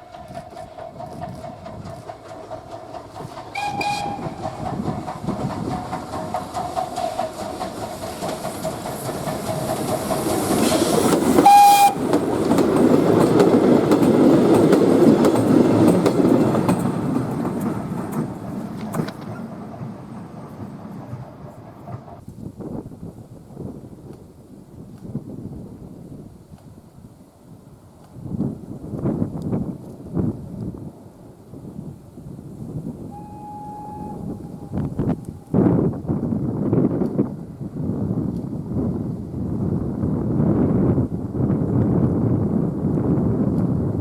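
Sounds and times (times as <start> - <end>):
steam train passing: 0.0 - 44.0
steam whistle blast: 3.5 - 4.7, 11.4 - 12.1, 33.1 - 35.6.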